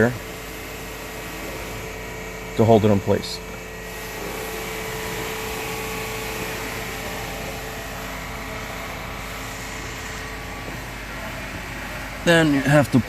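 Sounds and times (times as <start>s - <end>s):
fan humming: 0.0s - 13.0s.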